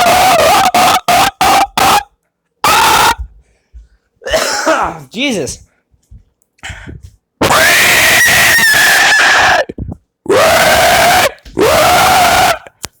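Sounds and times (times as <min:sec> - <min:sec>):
person screeching: 0:00.0 - 0:03.2, 0:07.4 - 0:12.8.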